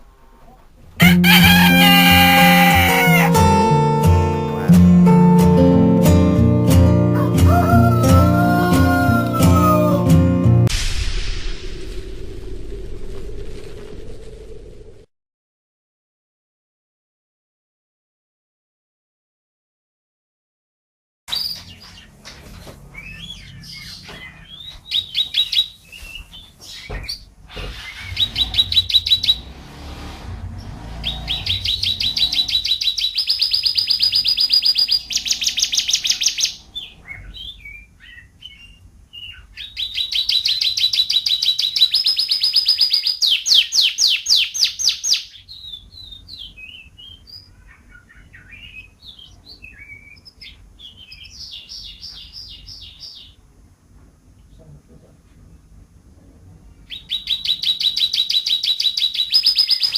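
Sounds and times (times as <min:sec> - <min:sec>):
soft bird chirps and twitters: 0:21.3 - 0:29.5, 0:30.6 - 0:53.4, 0:56.8 - 0:59.9
canary singing trills: 0:21.3 - 0:29.6, 0:30.5 - 0:53.4, 0:56.8 - 0:59.9.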